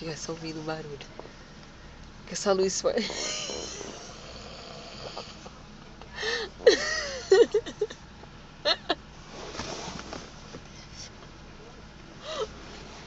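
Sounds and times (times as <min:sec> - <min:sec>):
man snoring: 0:03.3 - 0:05.5.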